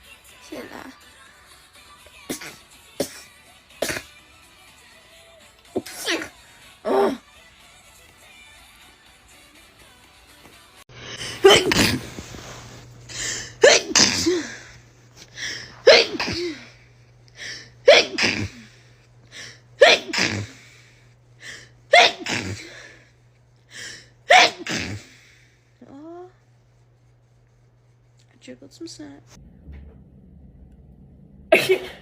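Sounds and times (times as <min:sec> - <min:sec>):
girl sneezing: 0:02.3 - 0:04.1, 0:05.8 - 0:07.2, 0:11.2 - 0:12.6, 0:13.2 - 0:14.7, 0:15.4 - 0:16.8, 0:17.4 - 0:18.8, 0:19.8 - 0:20.8, 0:21.9 - 0:22.9, 0:24.3 - 0:25.2, 0:31.5 - 0:32.0.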